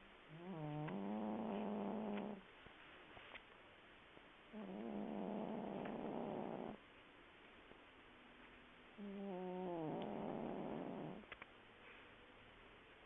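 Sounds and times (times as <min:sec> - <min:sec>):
cat snoring: 0:00.3 - 0:02.4, 0:04.5 - 0:06.8, 0:09.0 - 0:11.3.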